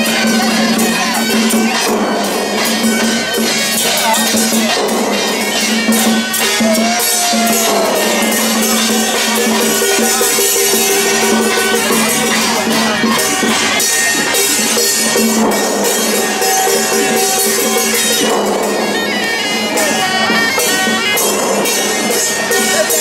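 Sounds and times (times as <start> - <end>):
drums and cymbals clattering: 0.0 - 23.0
shrill reed horns: 6.0 - 23.0.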